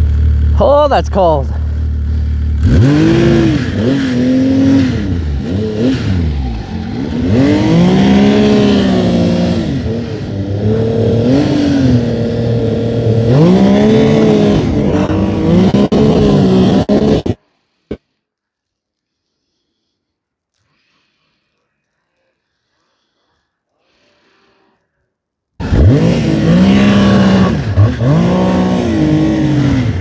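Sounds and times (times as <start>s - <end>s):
snowmobile engine revving: 0.0s - 17.4s, 25.6s - 30.0s.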